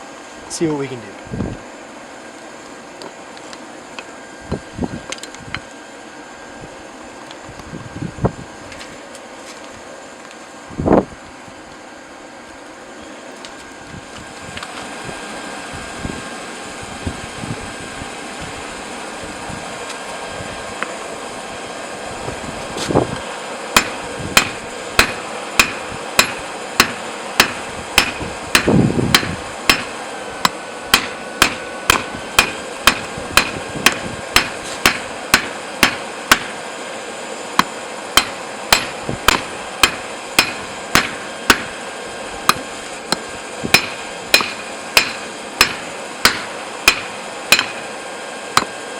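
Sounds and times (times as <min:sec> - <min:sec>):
hammer ringing on anvil: 0:23.8 - 0:36.5, 0:37.6 - 0:41.8, 0:42.5 - 0:47.9.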